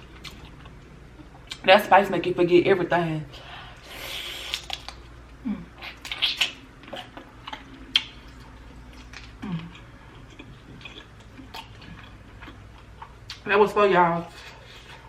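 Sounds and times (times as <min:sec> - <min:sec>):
person chewing food: 0:00.0 - 0:01.6, 0:04.0 - 0:13.4.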